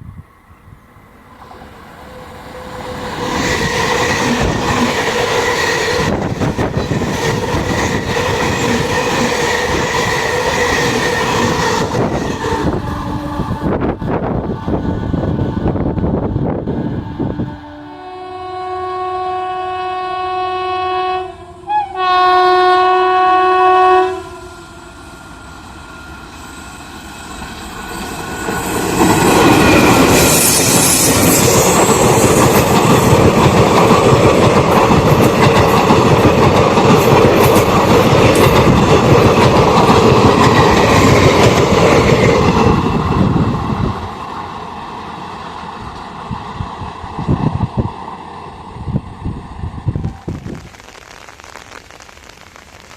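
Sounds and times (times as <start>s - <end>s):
train horn blasts: 12.6s - 14.8s, 16.7s - 25.1s
train wheels clattering over rail joints: 28.8s - 43.0s.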